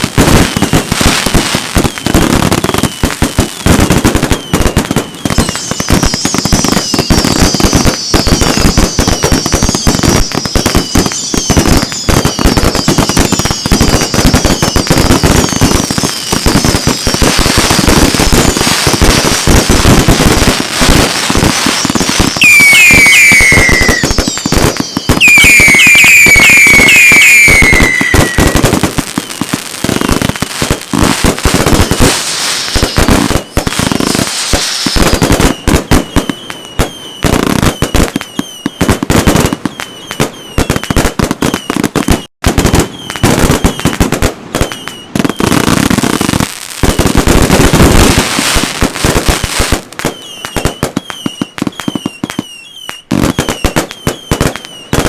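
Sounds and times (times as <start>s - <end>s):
falling firework whistles: 0.0s - 46.9s, 47.6s - 55.0s
firework bangs and crackles: 0.0s - 55.0s
high warbling firework whistles: 4.2s - 17.2s, 20.8s - 30.3s, 32.0s - 42.3s, 42.9s - 44.0s, 44.6s - 45.7s, 50.0s - 55.0s.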